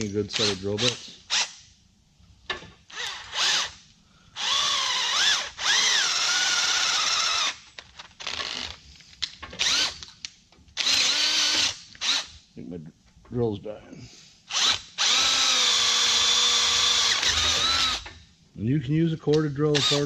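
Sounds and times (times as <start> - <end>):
cordless drill whining: 2.9 - 3.8, 4.4 - 8.8, 9.6 - 10.0, 10.8 - 12.3, 14.5 - 18.1, 19.8 - 20.0.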